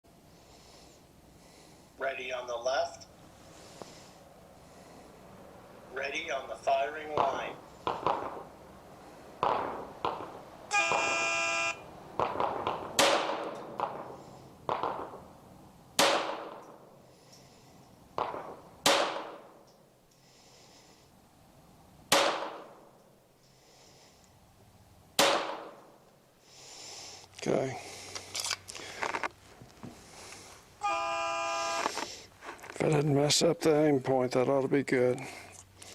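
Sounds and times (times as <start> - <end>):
distant pistol shots: 7.2 - 8.5, 9.4 - 11.2, 12.2 - 15.3, 16.0 - 16.9, 18.2 - 19.6, 22.1 - 22.9, 25.2 - 25.9
pistol shots: 7.2 - 8.5, 9.4 - 11.1, 12.2 - 15.2, 16.0 - 16.8, 18.2 - 19.6, 22.1 - 22.8, 25.2 - 25.9
electronic start beep: 10.7 - 11.8.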